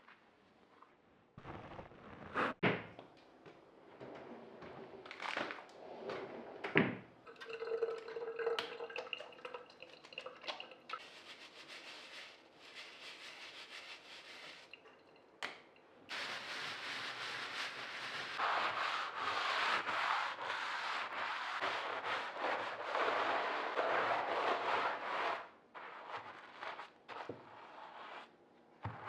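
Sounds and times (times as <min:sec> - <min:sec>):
water running: 0:07.2 - 0:12.2.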